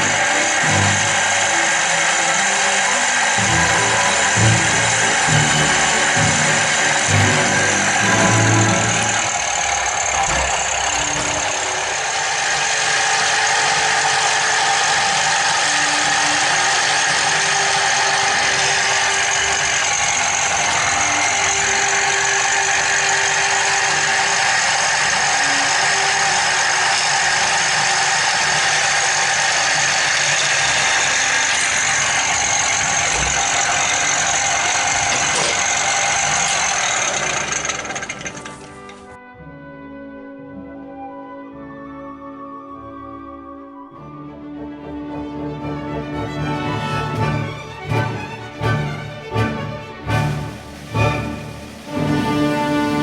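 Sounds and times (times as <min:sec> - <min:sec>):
drill motor whining: 0:00.0 - 0:39.1.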